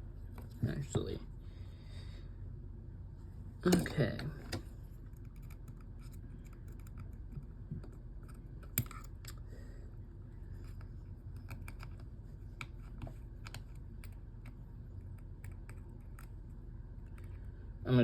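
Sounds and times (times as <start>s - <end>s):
steady low hum: 0.0s - 18.0s
tools and phone parts clicking: 5.1s - 9.4s, 10.6s - 16.3s.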